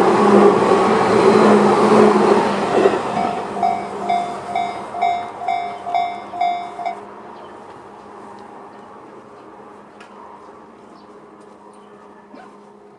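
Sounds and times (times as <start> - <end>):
electric train running past: 0.0 - 12.9
crossing warning bell dinging: 2.2 - 7.7.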